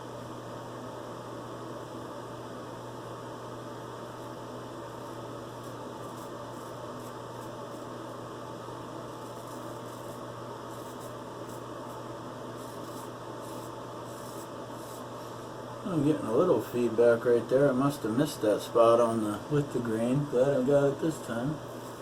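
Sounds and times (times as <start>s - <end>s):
razor scraping stubble: 5.0s - 8.0s, 9.0s - 15.4s, 21.1s - 22.0s.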